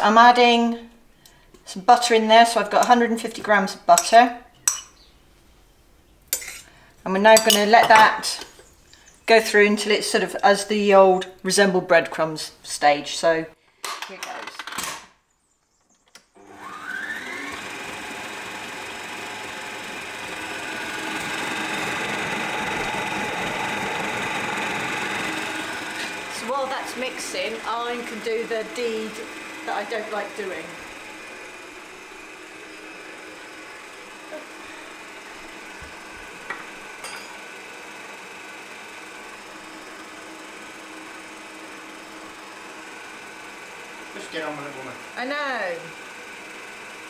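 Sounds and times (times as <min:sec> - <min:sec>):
electric mixer motor whine: 0:16.3 - 0:47.0.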